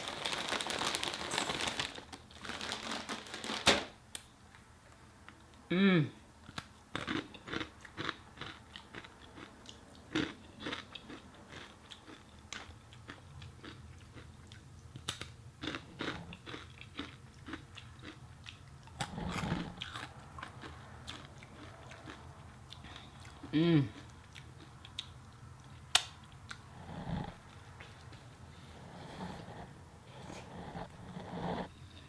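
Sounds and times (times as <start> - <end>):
chewing crunchy food: 6.5 - 26.6.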